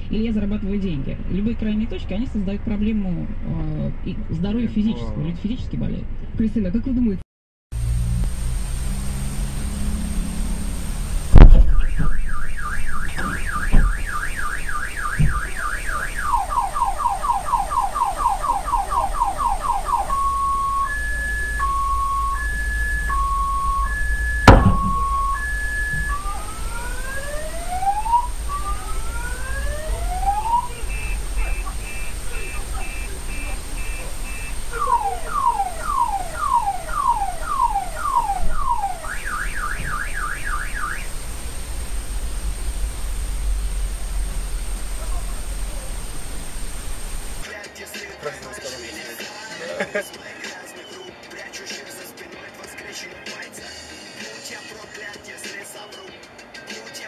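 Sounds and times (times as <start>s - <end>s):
car alarm siren: 8.5s - 47.5s
loud thump: 9.2s - 14.2s, 15.1s - 15.6s, 24.3s - 26.8s.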